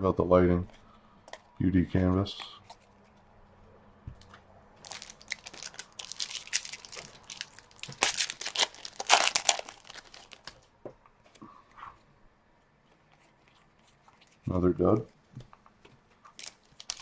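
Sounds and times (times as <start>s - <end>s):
foil wrapper tearing and crinkling: 4.8s - 10.6s, 16.3s - 17.0s.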